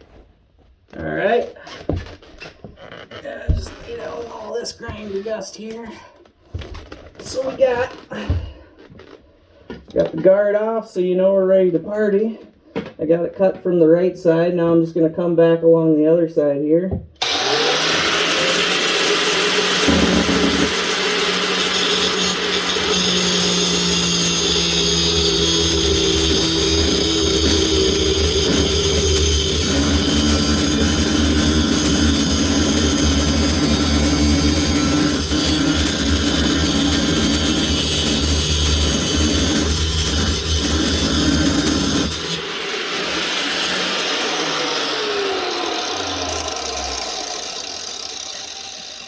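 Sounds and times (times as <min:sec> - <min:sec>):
angle grinder cutting pipe: 0:17.2 - 0:49.0.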